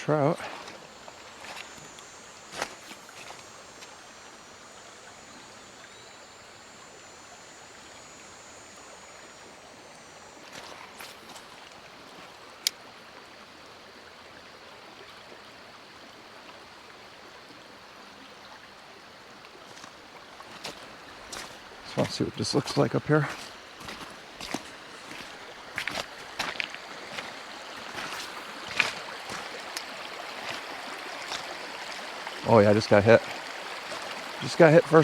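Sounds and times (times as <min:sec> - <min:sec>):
creek water running over rocks: 0:00.0 - 0:35.0
faint high-pitched tone: 0:01.4 - 0:10.8.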